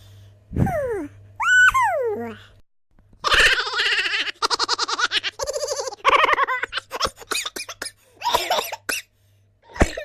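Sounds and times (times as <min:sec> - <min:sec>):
cartoon laughing: 0:03.2 - 0:07.8.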